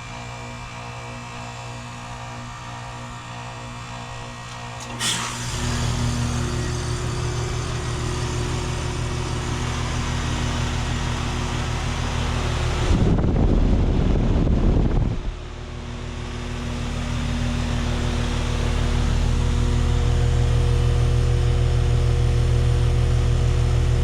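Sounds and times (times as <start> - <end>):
heat pump humming: 0.0 - 24.0
refrigerant hissing: 4.8 - 12.4
loud low rumble: 5.7 - 24.0.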